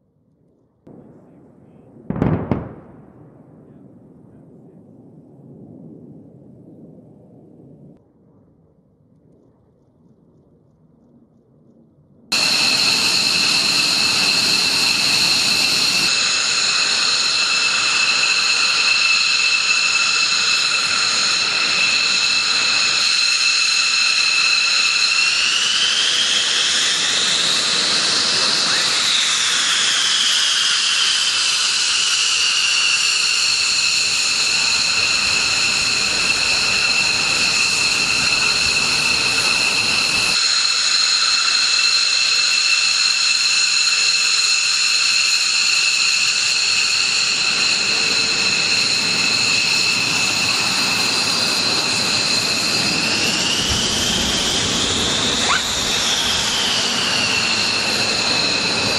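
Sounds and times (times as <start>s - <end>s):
jet engine whining: 12.3s - 58.9s.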